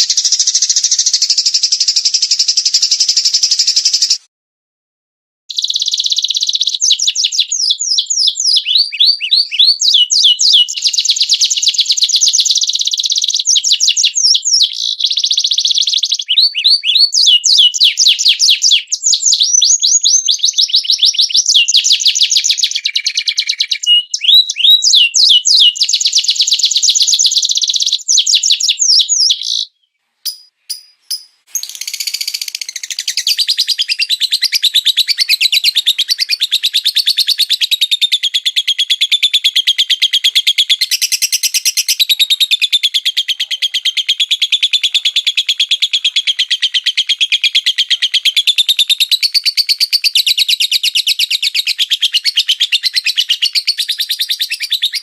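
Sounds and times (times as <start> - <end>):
songbirds singing: 5.5 - 48.4
bird trilling chatter: 27.4 - 37.6.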